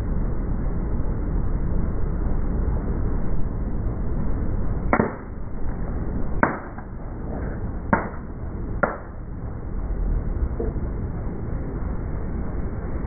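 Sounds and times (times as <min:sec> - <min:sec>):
car engine rumble: 0:03.9 - 0:13.0.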